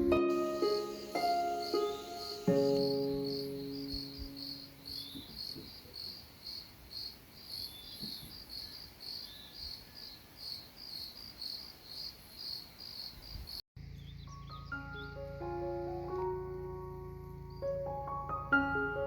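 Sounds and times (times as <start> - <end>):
crickets chirping: 0.0 - 14.1.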